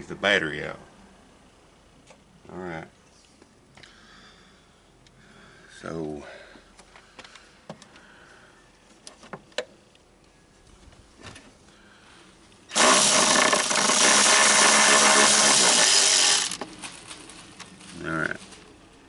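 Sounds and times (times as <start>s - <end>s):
power drill running: 12.7s - 16.6s.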